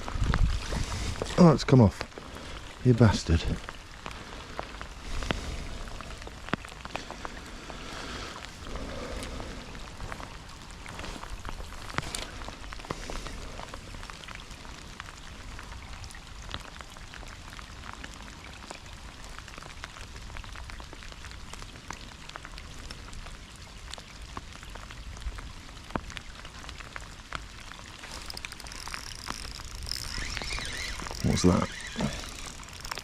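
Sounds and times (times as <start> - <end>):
rain hissing: 0.0 - 17.3, 26.8 - 33.0
raindrop ticks: 0.0 - 33.0.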